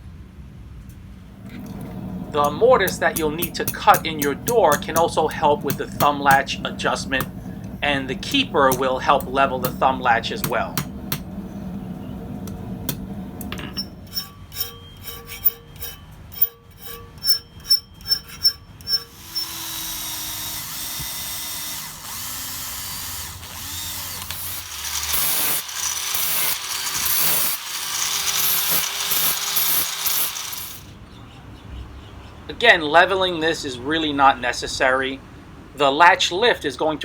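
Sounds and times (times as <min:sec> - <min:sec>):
electric power tool on metal: 0:01.4 - 0:30.9.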